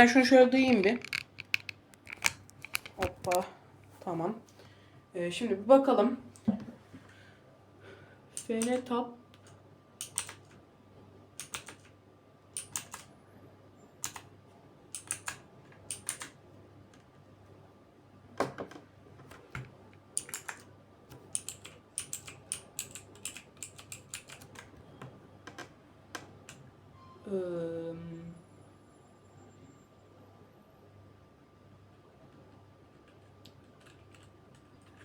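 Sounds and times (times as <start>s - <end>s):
mechanical keyboard clicks: 0.6s - 3.4s, 8.4s - 10.6s, 11.4s - 11.9s, 12.6s - 13.1s, 14.0s - 14.3s, 14.9s - 16.4s, 19.3s - 24.7s, 33.0s - 35.0s.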